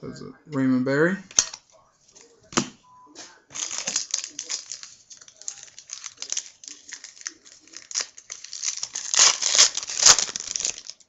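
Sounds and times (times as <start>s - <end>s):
plastic wrapper crinkling and tearing: 3.5s - 11.0s.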